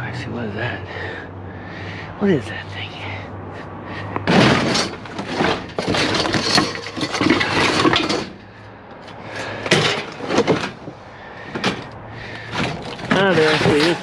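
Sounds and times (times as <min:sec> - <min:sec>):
junk clattering in a dumpster: 0:04.2 - 0:08.5, 0:09.4 - 0:14.0.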